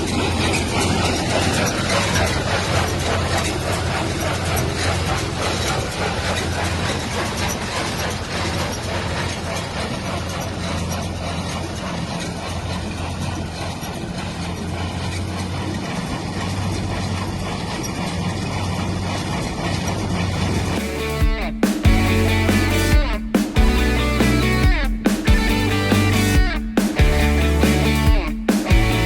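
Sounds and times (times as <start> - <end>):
baler mechanism clattering: 0.0 - 29.0
tractor engine drone: 0.0 - 29.0.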